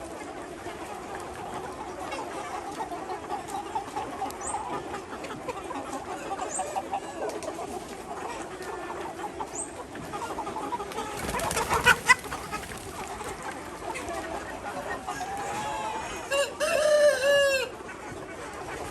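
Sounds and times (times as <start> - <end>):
chickens clucking: 0.0 - 18.9.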